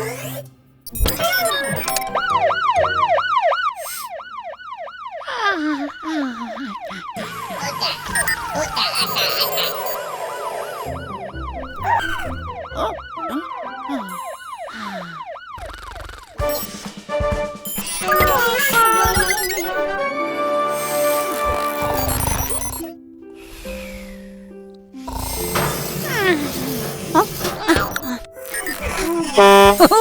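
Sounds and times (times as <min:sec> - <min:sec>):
jingly sound effects: 0:00.9 - 0:03.2, 0:06.4 - 0:22.9, 0:25.1 - 0:30.0
cartoon siren yelping: 0:01.0 - 0:16.5, 0:17.8 - 0:20.0, 0:27.2 - 0:30.0.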